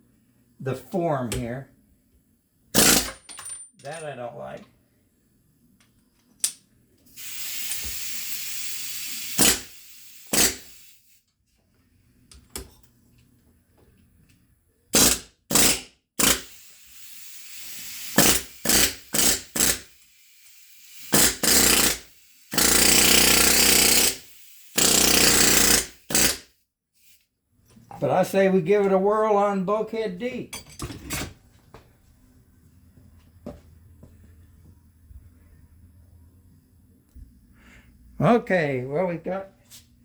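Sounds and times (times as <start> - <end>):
pneumatic rivet gun hammering: 2.8 - 3.3, 7.2 - 10.9, 14.9 - 26.5.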